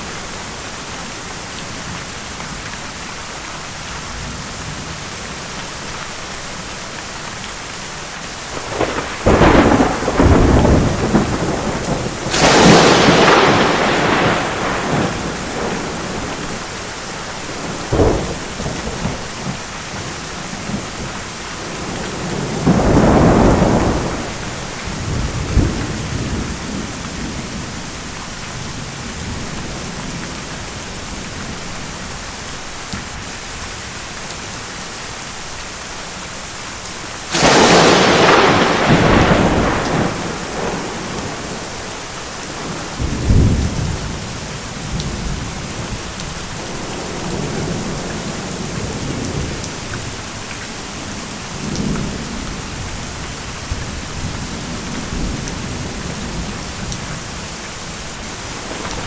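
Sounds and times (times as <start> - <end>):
steady rain: 0.0 - 59.0
thunder rumbling: 8.5 - 31.7, 37.3 - 59.0
sharp thunderclap: 8.6 - 16.8, 20.7 - 27.4, 37.3 - 41.9, 42.5 - 49.8.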